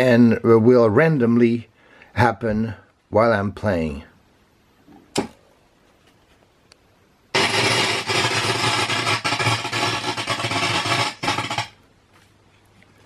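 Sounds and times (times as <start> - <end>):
amplifier crackling: 4.6 - 13.0.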